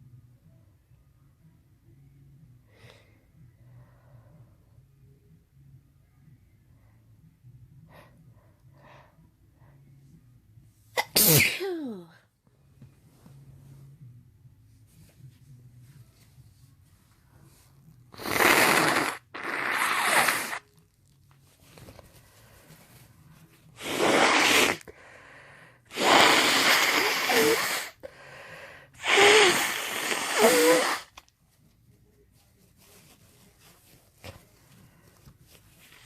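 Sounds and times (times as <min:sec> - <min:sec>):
woman sneezing: 0:11.0 - 0:12.2, 0:29.0 - 0:31.1
breathy in-breaths: 0:24.9 - 0:25.9, 0:27.9 - 0:29.0.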